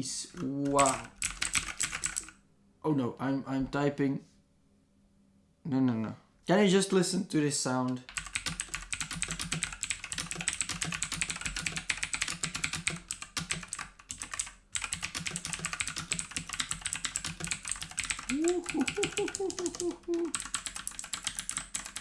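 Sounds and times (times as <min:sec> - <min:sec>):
mechanical keyboard typing: 0:00.6 - 0:02.3, 0:08.1 - 0:22.0
short vocal sound: 0:18.3 - 0:20.4.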